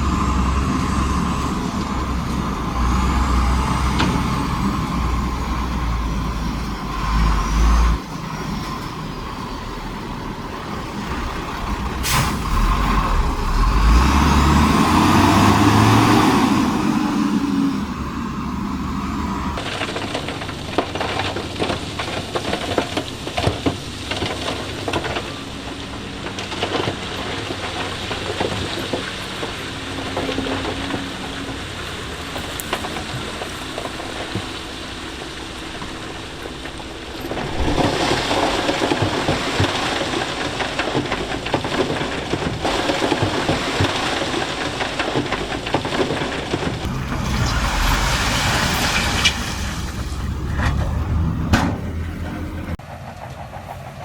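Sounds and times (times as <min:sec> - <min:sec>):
diesel engine running: 0:00.0 - 0:20.7, 0:44.4 - 0:54.0
loose stone rattling and tumbling: 0:19.6 - 0:50.8.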